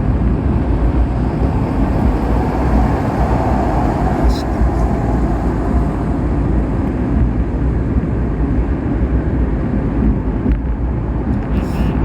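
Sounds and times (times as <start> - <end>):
car driving at speed: 0.0 - 12.0.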